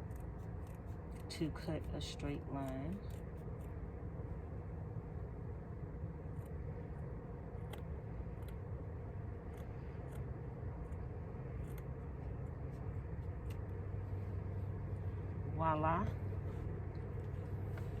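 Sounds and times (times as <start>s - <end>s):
scissors snipping fabric: 0.0s - 3.8s, 9.5s - 12.1s
steady low hum: 0.0s - 18.0s.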